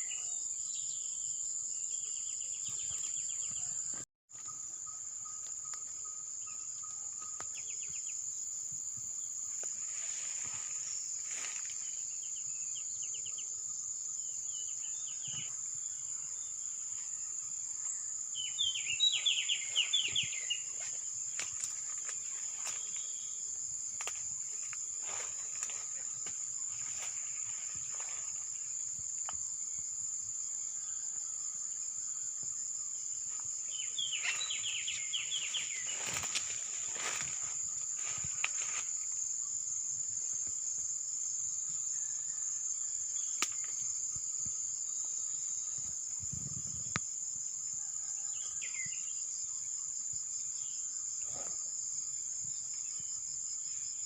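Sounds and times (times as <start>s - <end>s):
insects shrilling: 33.8s - 39.3s.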